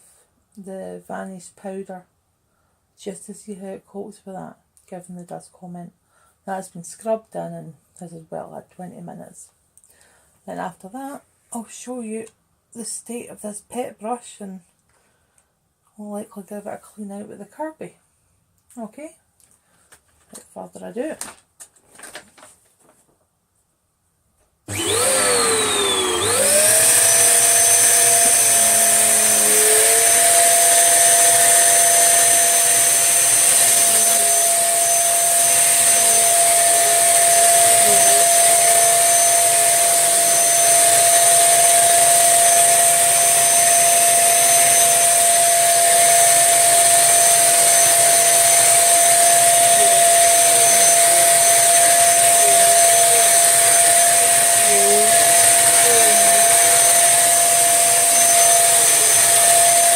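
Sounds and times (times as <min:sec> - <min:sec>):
vacuum cleaner motor whine: 0:24.7 - 0:59.9.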